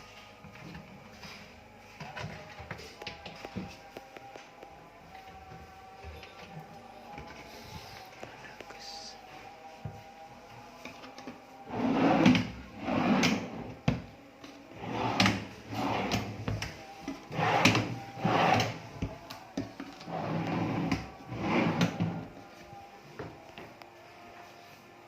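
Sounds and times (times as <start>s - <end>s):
drawers sliding on runners: 11.7s - 13.8s, 14.7s - 18.8s, 20.0s - 22.2s.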